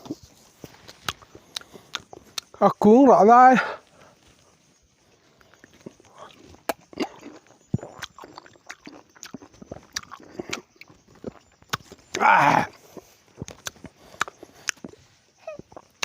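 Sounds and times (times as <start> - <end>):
person biting and chewing: 0.9 - 2.6, 5.4 - 16.0
wet mouth clicks and smacks: 0.9 - 2.6, 5.4 - 12.2, 13.4 - 15.0.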